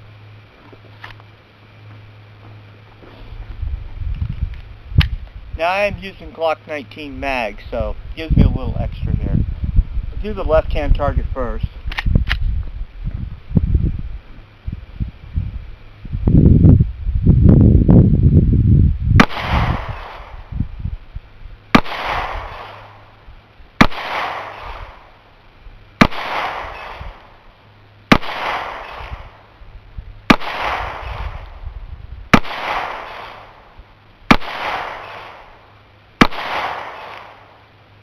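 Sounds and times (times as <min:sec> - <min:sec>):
pistol shots with echo: 0:19.2 - 0:20.3, 0:21.8 - 0:23.0, 0:23.8 - 0:25.0, 0:26.0 - 0:27.2, 0:28.1 - 0:29.3, 0:30.3 - 0:31.4, 0:32.3 - 0:33.6, 0:34.3 - 0:35.6, 0:36.2 - 0:37.5.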